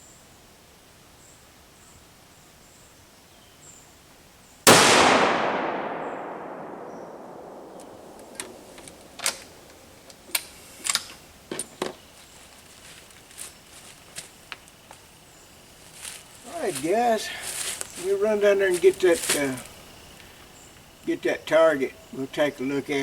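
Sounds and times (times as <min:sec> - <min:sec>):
rifle shot rolling away: 0:04.7 - 0:09.9.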